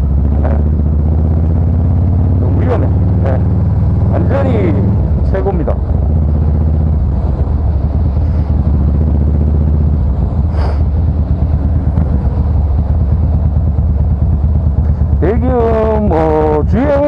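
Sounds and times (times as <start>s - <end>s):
loud motorcycle engine cruising: 0.0s - 17.0s.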